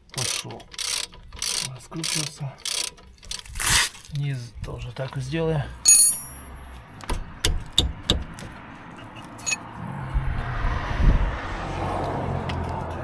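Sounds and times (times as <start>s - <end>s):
wrenches clinking on metal: 0.1s - 3.9s, 5.9s - 6.5s, 9.4s - 9.6s.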